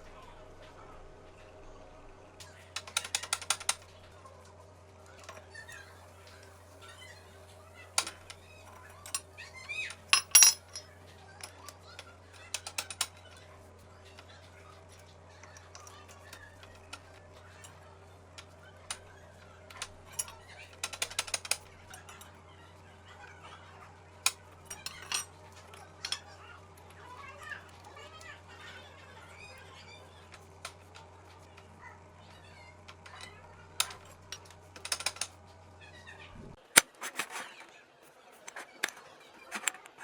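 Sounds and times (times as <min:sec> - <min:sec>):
small objects clinking: 0:09.9 - 0:11.6.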